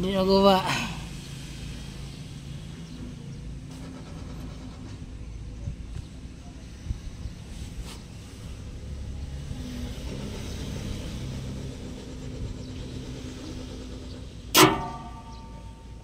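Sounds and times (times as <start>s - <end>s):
low rumbling hum: 0.0s - 16.0s
sharp metallic knock: 14.5s - 16.0s.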